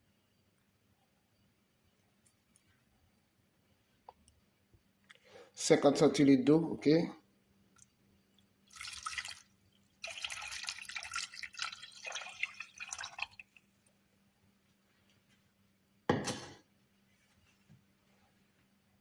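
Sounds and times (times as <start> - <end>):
water pouring into a saucepan: 8.6 - 13.6.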